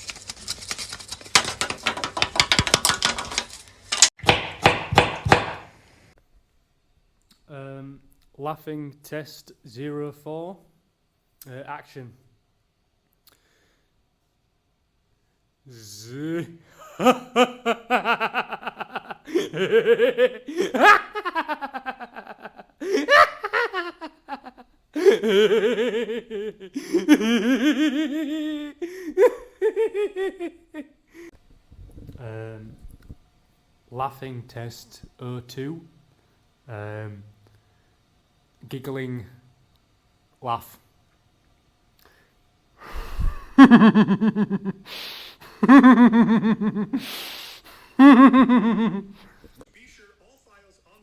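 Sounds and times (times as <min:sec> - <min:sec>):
person giggling: 0:16.8 - 0:31.3, 0:43.0 - 0:47.2, 0:48.0 - 0:49.4
person laughing: 0:16.8 - 0:31.3, 0:43.0 - 0:47.4, 0:48.0 - 0:49.4
sharp gasping in-breath: 0:28.8 - 0:29.2, 0:44.8 - 0:45.6, 0:47.0 - 0:48.0.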